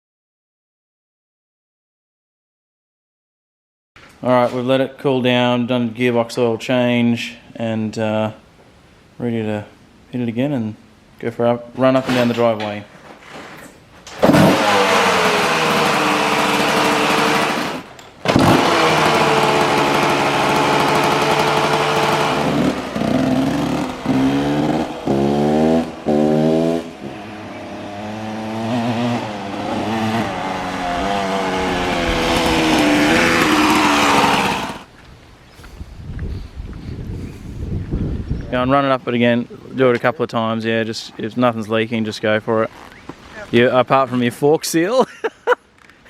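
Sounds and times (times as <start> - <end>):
dirt bike engine revving: 14.2 - 34.9.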